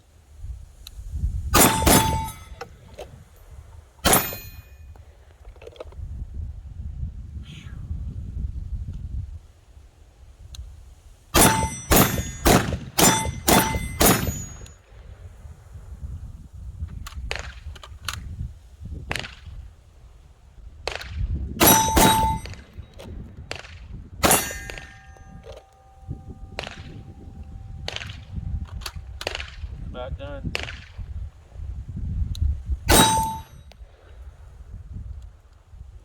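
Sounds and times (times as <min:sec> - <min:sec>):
pistol shots: 0:01.6 - 0:02.6, 0:11.4 - 0:14.6, 0:20.9 - 0:22.8, 0:23.5 - 0:27.0, 0:32.9 - 0:33.5
steel plates ringing: 0:01.6 - 0:03.4, 0:04.0 - 0:05.0, 0:11.4 - 0:14.9, 0:21.6 - 0:23.1, 0:24.2 - 0:29.9, 0:32.9 - 0:33.8.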